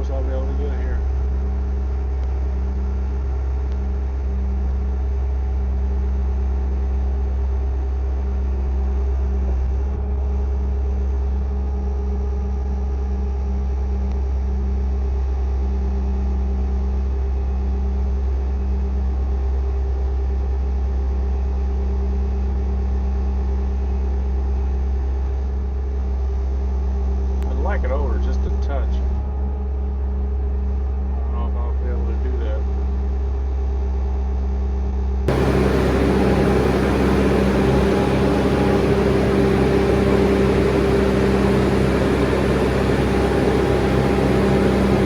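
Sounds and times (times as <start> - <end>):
diesel engine droning: 35.3 - 45.0.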